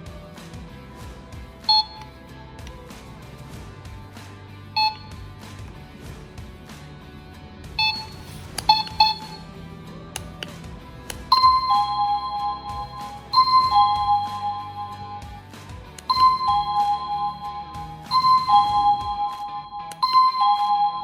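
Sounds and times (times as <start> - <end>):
background music: 0.0 - 21.0
short electronic beeps: 1.7 - 2.0, 4.8 - 5.3, 7.8 - 9.4, 11.3 - 15.4, 16.0 - 21.0
two-note doorbell chime: 11.3 - 15.4, 16.1 - 21.0.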